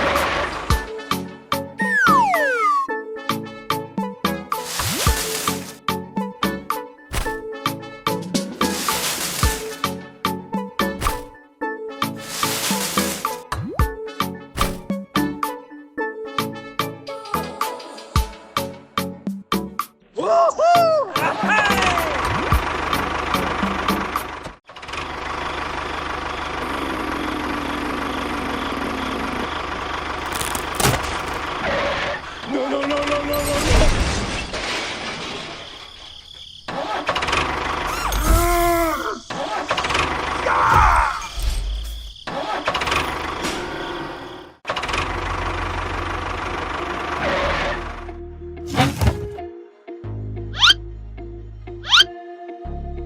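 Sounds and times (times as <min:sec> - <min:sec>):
engine running: 0:22.0 - 0:32.5, 0:44.7 - 0:48.3.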